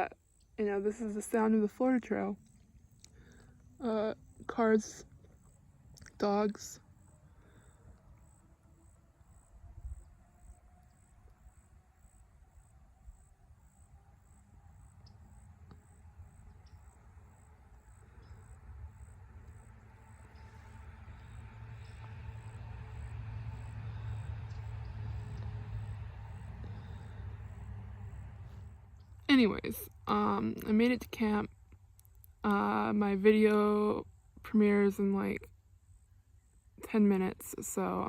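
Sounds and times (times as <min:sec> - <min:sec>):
insects chirping: 0:00.0 - 0:32.9, 0:35.1 - 0:38.0
road vehicle rumble passing: 0:03.1 - 0:31.1.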